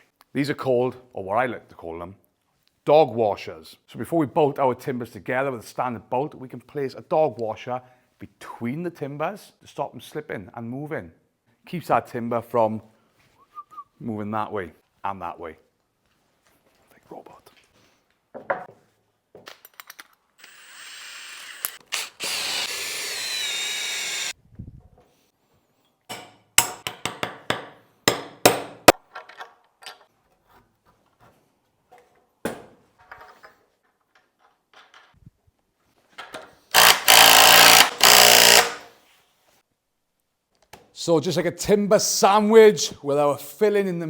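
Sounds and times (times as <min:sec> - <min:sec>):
power drill running: 0:20.4 - 0:24.3, 0:36.7 - 0:38.8.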